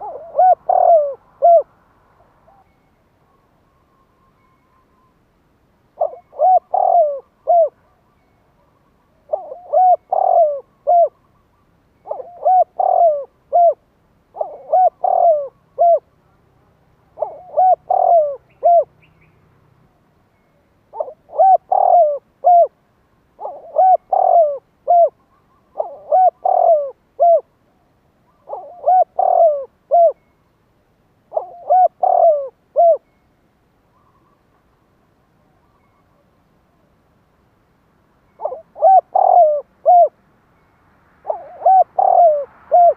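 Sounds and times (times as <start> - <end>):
dove cooing: 0.0 - 1.7, 6.0 - 8.0, 8.7 - 11.2, 12.0 - 16.1, 17.2 - 19.0, 20.9 - 22.8, 23.4 - 27.5, 28.3 - 30.2, 31.3 - 33.1, 38.4 - 40.2, 41.2 - 42.9.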